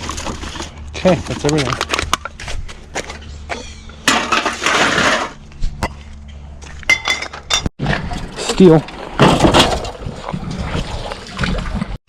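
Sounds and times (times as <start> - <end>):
metal scraping rattle: 4.0 - 5.4
scrap metal knocking and clinking: 6.8 - 7.7.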